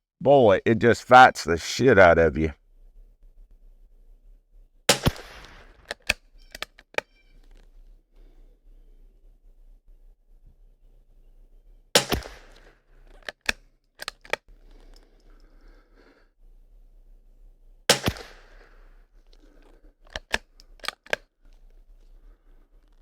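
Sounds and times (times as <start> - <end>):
rifle shots: 4.9 - 6.2, 12.0 - 12.8, 17.9 - 18.8
rifle bolt metallic clicks: 4.9 - 7.6, 12.0 - 15.1, 19.4 - 21.3.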